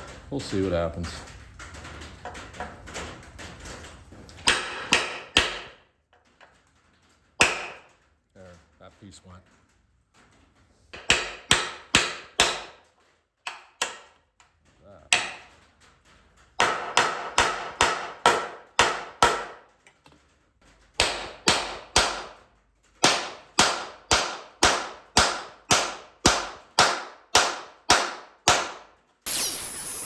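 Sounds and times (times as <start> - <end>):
hammer striking chisel on metal: 4.4 - 5.8, 7.4 - 7.9, 11.0 - 12.8, 15.1 - 15.4, 16.6 - 19.6, 21.0 - 22.3, 23.0 - 28.8
hissing noise: 29.3 - 30.0.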